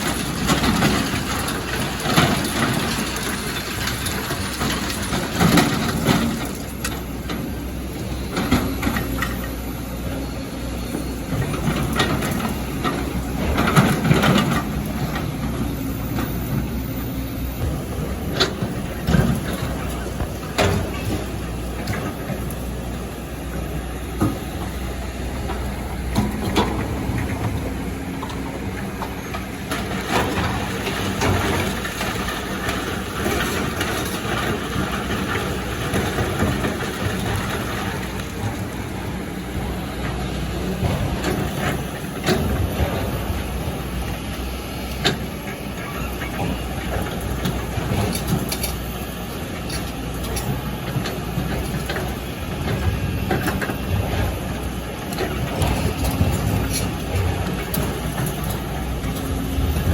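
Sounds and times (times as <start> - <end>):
excavator diesel engine running: 0.0 - 59.9.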